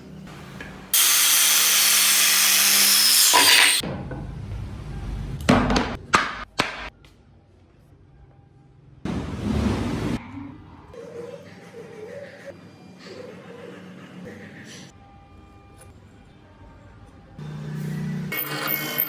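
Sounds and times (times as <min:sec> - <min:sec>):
power tool cutting wood: 0:01.0 - 0:03.8.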